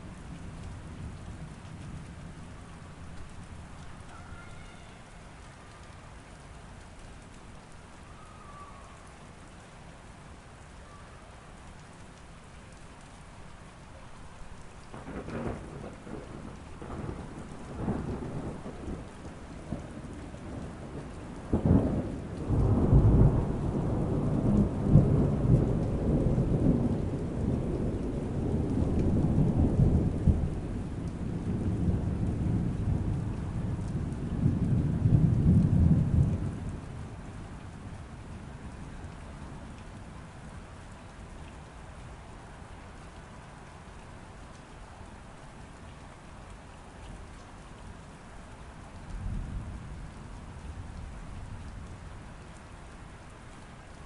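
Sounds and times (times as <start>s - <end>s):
steady rain: 0.0s - 54.0s
thunder rumbling: 14.9s - 38.7s.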